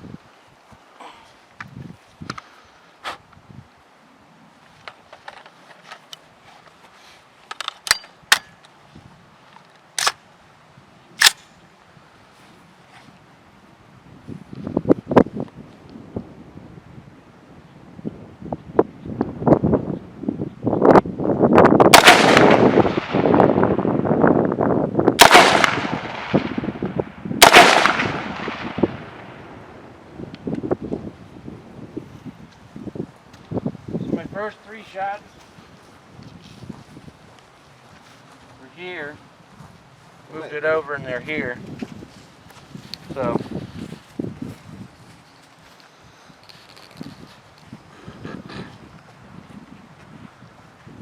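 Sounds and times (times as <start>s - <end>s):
rifle action clicking and clacking: 7.4s - 8.7s, 9.6s - 10.2s, 11.2s - 11.5s
rifle shots echoing: 21.9s - 23.4s, 25.2s - 26.8s, 27.4s - 29.4s.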